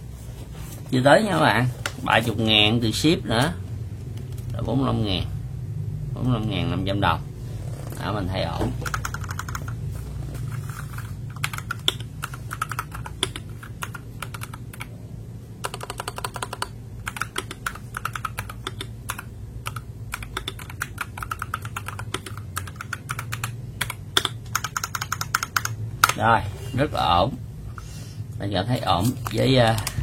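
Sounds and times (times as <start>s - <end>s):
mechanical keyboard typing: 8.8s - 9.8s, 10.4s - 14.9s, 15.6s - 26.2s.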